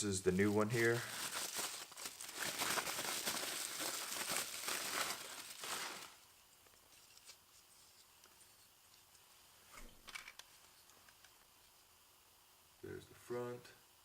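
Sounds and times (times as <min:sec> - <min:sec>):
plastic wrapping crinkling: 0:00.3 - 0:08.6.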